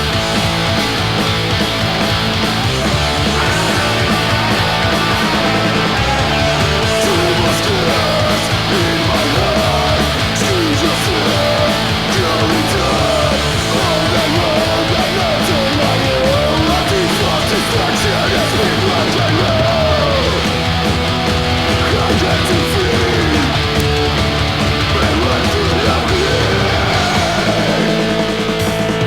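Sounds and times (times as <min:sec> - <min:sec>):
bass guitar: 0:00.0 - 0:29.0
distorted electric guitars: 0:00.0 - 0:29.0
driving drums: 0:00.0 - 0:29.0
bending melody line: 0:02.8 - 0:09.5.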